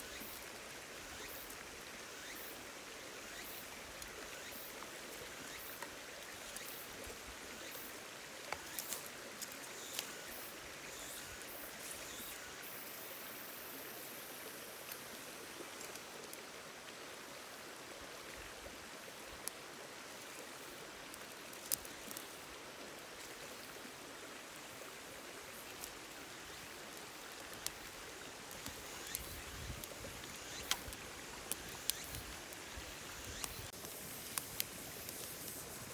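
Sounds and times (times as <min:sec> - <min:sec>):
river water flowing: 0:00.0 - 0:35.9
sharp clicks: 0:28.5 - 0:35.6.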